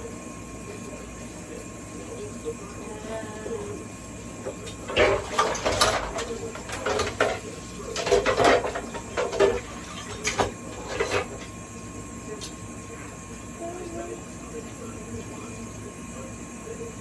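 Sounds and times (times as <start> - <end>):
low background hum: 0.0 - 17.0
utensil clattering on cookware: 4.8 - 11.6.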